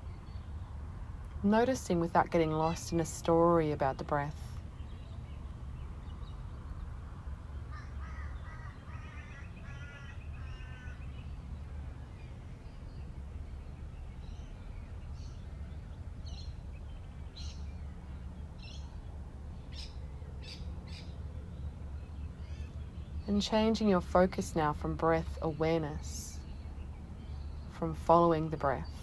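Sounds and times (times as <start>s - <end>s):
steady low rumble: 0.0s - 29.0s
harsh bird calls: 7.6s - 11.6s.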